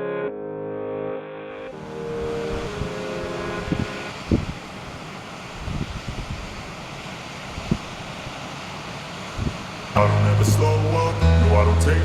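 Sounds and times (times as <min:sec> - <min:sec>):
background music: 0:00.0 - 0:04.1, 0:10.0 - 0:12.0
rushing water: 0:01.7 - 0:12.0
wind buffeting microphone: 0:02.1 - 0:06.8, 0:07.4 - 0:08.4, 0:09.3 - 0:11.1.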